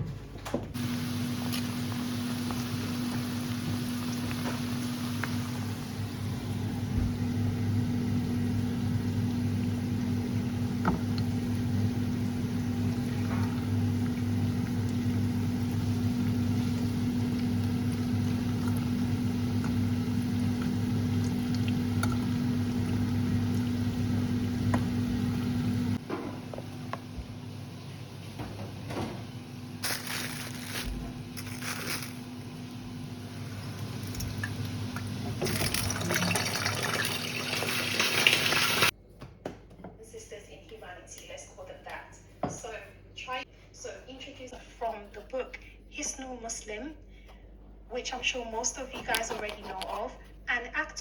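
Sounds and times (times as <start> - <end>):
kitchen appliance motor humming: 0.8 - 38.9.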